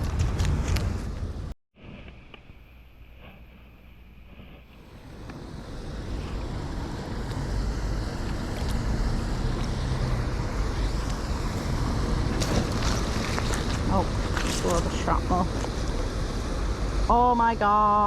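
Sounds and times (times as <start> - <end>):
wind buffeting microphone: 4.8 - 18.0.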